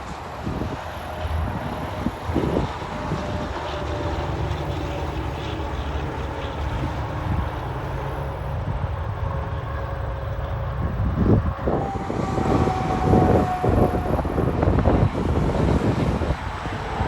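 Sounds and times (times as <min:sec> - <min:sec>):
diesel truck engine rumbling: 0:00.0 - 0:17.0
steady high tone: 0:11.6 - 0:16.3.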